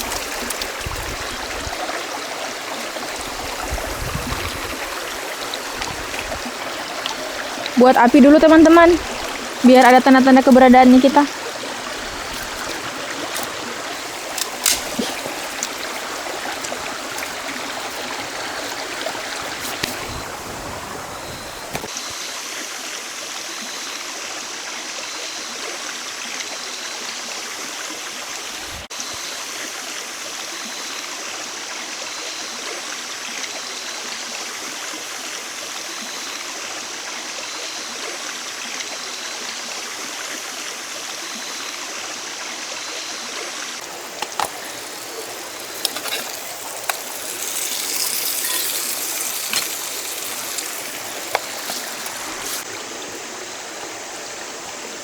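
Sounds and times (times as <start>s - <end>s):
river water flowing: 0.0s - 25.0s, 32.9s - 55.0s
steady high hiss: 43.8s - 55.0s.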